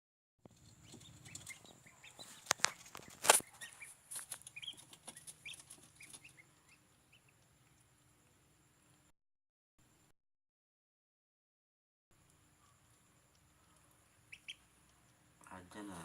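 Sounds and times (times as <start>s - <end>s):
chicks peeping: 0.5s - 7.9s, 12.6s - 16.0s.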